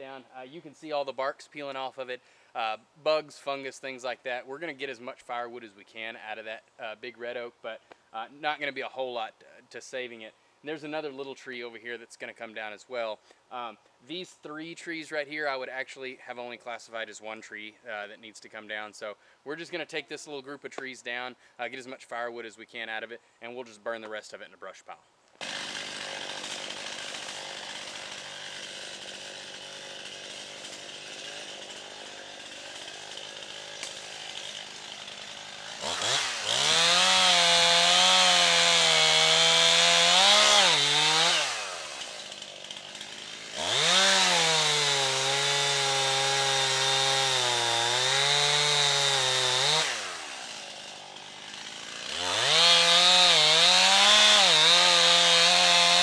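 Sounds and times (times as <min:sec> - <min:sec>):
chainsaw revving and cutting wood: 0:25.4 - 0:56.0.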